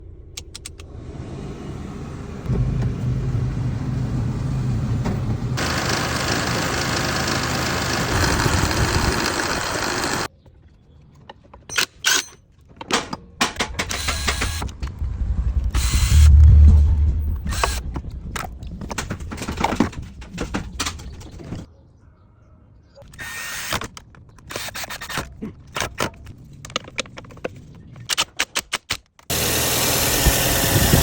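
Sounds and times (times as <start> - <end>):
car engine running: 0.2 - 10.3, 29.3 - 31.0
electric cooling fan: 1.0 - 10.3, 29.3 - 31.0
scattered clicks and knocks: 11.2 - 15.0, 17.3 - 21.7
low rumble: 14.0 - 21.7
loud rushing noise: 14.9 - 18.2.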